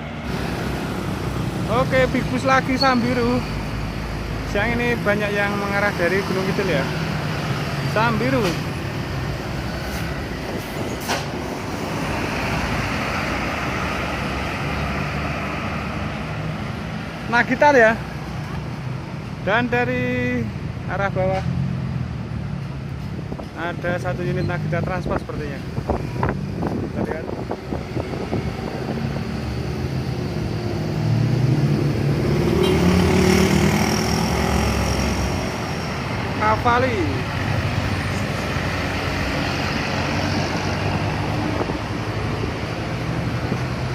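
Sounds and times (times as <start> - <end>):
bus driving past: 0.0 - 19.5, 25.6 - 43.9.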